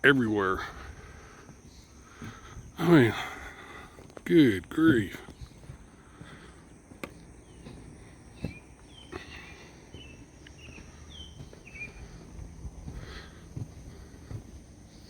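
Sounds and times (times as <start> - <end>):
quiet outdoor background: 0.0 - 15.0
small bird chirping: 4.9 - 15.0.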